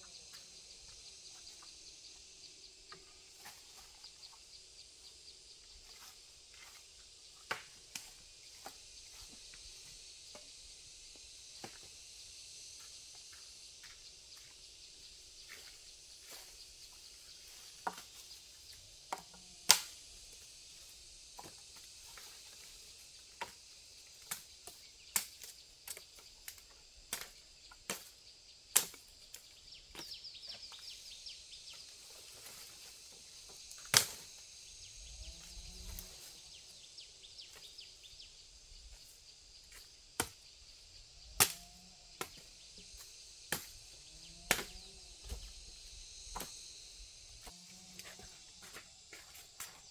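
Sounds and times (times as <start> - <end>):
steady high hiss: 28.8 - 49.9.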